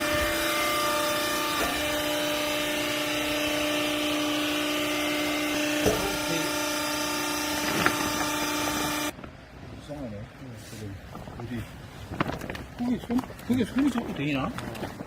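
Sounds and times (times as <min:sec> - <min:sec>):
machine motor humming: 0:00.0 - 0:09.2.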